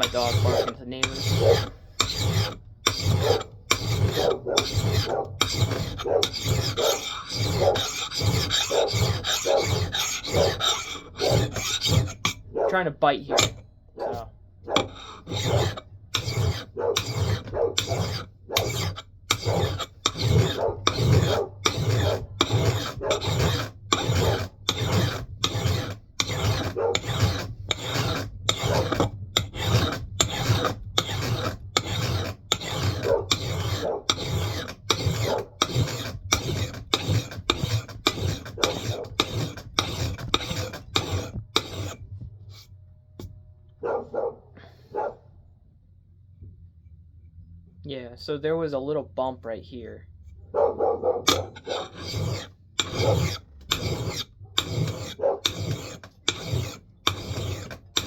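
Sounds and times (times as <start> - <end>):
hand file rasping on axe head: 0.0 - 42.7, 51.3 - 58.0.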